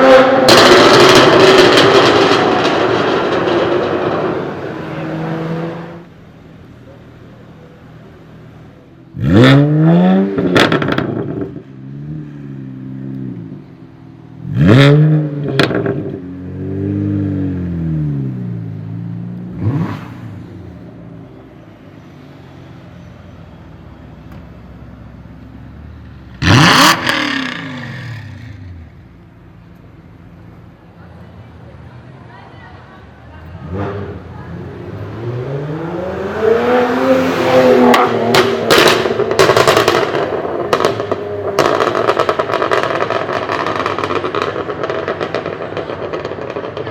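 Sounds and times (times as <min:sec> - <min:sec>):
car engine revving: 0:00.0 - 0:06.2, 0:08.6 - 0:23.1, 0:24.3 - 0:30.8, 0:33.4 - 0:46.9
exhaust pops and crackles: 0:00.4 - 0:04.4, 0:10.4 - 0:11.7, 0:37.9 - 0:46.9.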